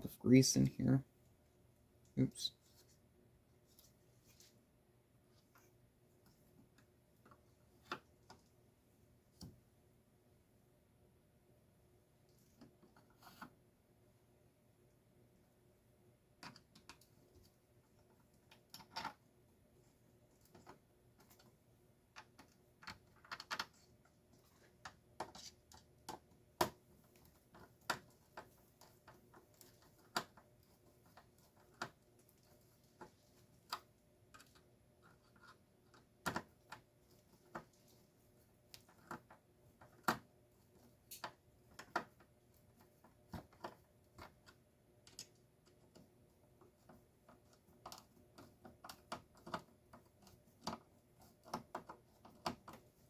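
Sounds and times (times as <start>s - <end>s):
small parts and tools clicking: 40.8s - 46.1s.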